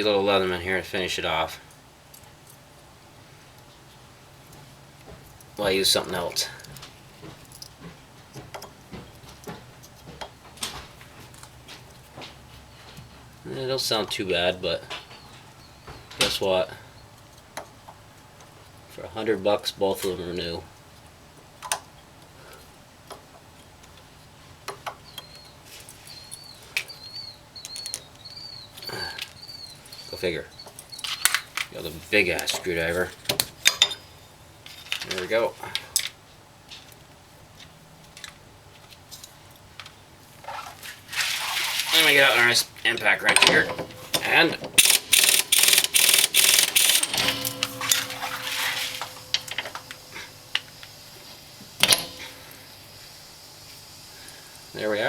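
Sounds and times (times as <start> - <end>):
metallic ringing: 43.0 - 53.4
impact wrench hammering: 43.3 - 51.0, 51.7 - 52.7
sharp clicks: 43.3 - 51.0
metallic clinks: 43.3 - 53.0.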